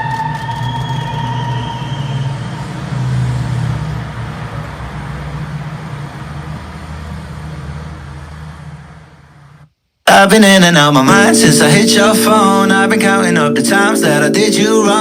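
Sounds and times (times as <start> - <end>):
speaker playing bass-heavy music: 11.1 - 15.0.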